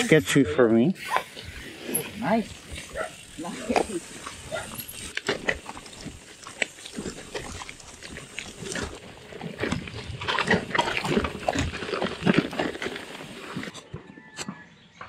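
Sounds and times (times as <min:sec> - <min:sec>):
bicycle rattling over rocky ground: 0:01.2 - 0:13.9.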